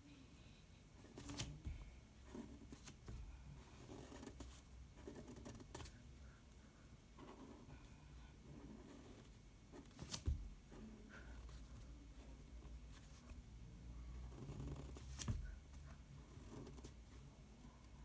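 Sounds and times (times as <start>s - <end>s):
pencil scratching on paper: 3.6s - 6.0s, 7.2s - 10.1s.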